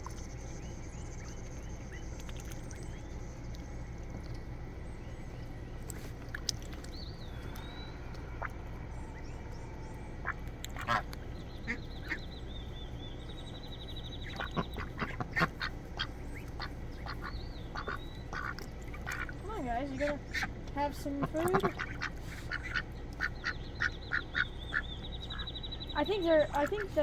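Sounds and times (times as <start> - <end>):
ducks quacking: 10.2 - 13.2, 14.2 - 27.0.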